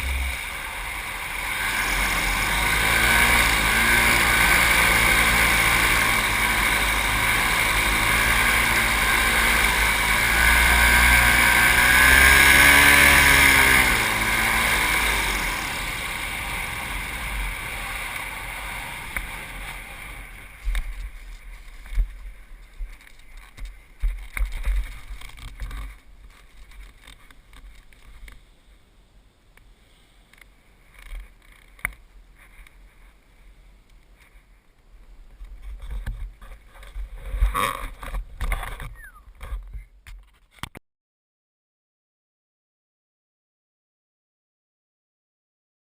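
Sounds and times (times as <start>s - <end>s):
paramotor engine running: 0.0s - 20.8s.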